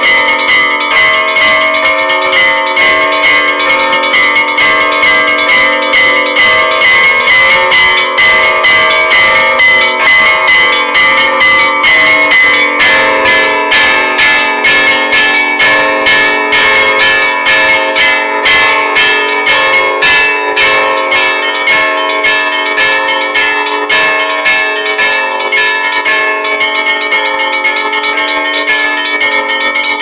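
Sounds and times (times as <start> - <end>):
large bells ringing: 0.0 - 30.0
small high church bells ringing: 0.0 - 30.0.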